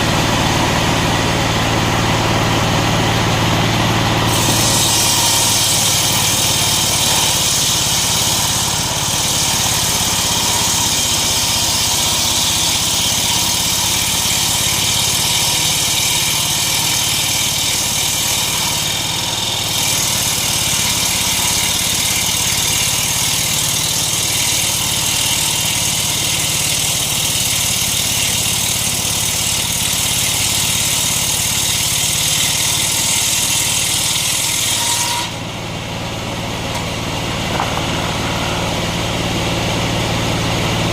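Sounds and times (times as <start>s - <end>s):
engine running: 0.0s - 34.2s, 35.2s - 40.9s
saw blade hissing: 4.2s - 26.3s.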